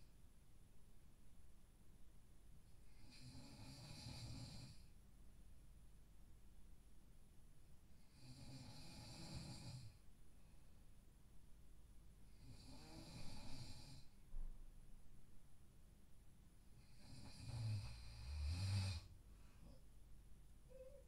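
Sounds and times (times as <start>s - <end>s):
man snoring: 3.1s - 4.8s, 8.2s - 10.0s, 12.4s - 14.1s, 17.0s - 19.1s.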